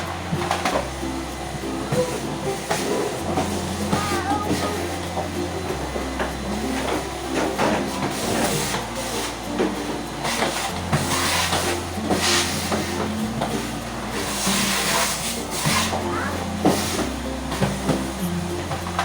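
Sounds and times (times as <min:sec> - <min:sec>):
vacuum cleaner running: 0:00.0 - 0:19.0
low stepping bass line: 0:10.8 - 0:19.0.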